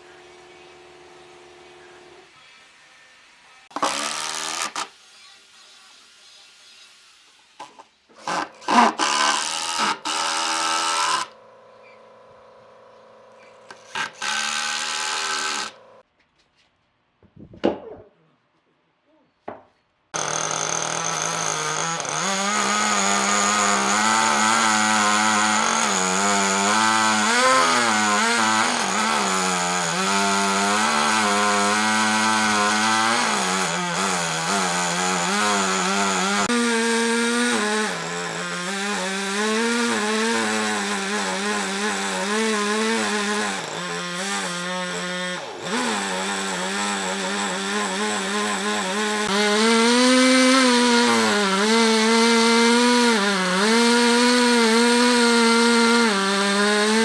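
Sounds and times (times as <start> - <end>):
chainsaw cutting into wood: 3.7 - 5.0, 7.6 - 11.5, 13.3 - 16.0, 20.2 - 57.0.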